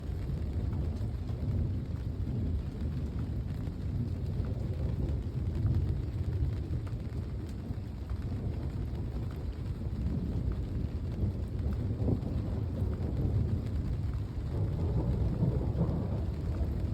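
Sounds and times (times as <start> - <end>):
distant thunder rumble: 8.4 - 16.9.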